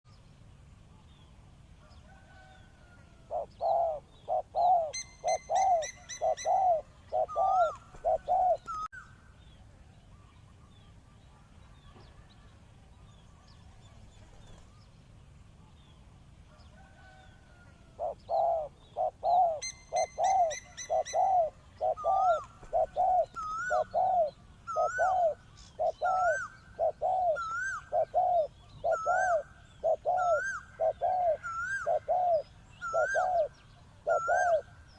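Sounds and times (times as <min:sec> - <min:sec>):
dove cooing: 0:02.1 - 0:09.0, 0:16.8 - 0:34.9
small bird chirping: 0:03.4 - 0:09.1.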